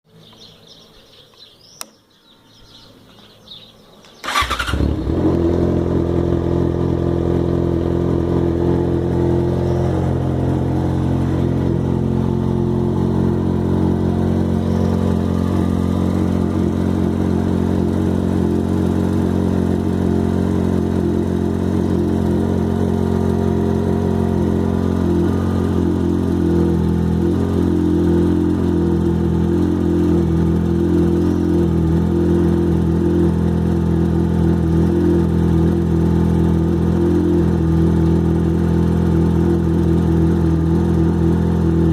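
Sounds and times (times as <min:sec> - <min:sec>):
starter motor cranking: 0:04.2 - 0:05.3
motorcycle engine idling: 0:04.2 - 0:41.9.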